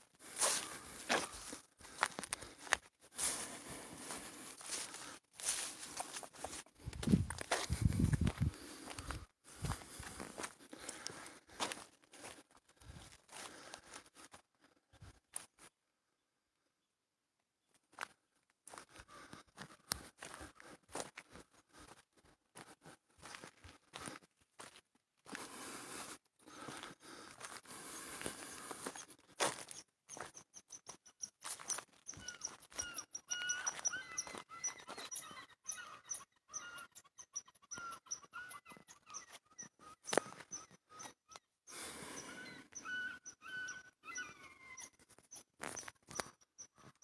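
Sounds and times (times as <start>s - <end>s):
small birds chirping: 0.2s - 1.6s, 29.7s - 47.0s.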